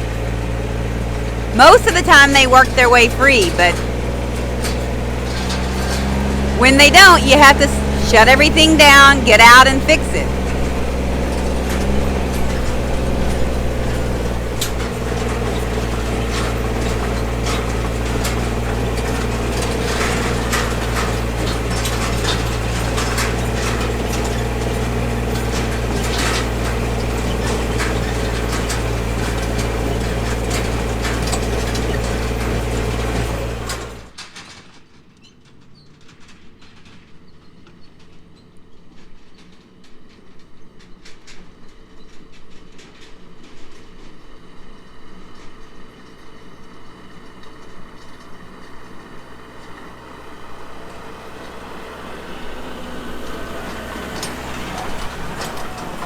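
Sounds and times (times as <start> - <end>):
tractor engine running: 0.0 - 34.2, 42.5 - 56.0
baler clanks and clicks: 0.0 - 41.4, 50.4 - 56.0
quiet rattle: 10.3 - 38.3.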